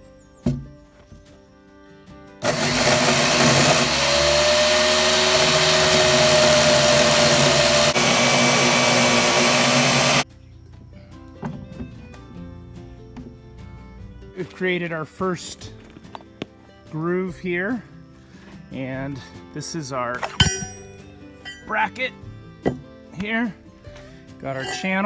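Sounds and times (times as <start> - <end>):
chain saw cutting wood post: 2.4 - 10.2.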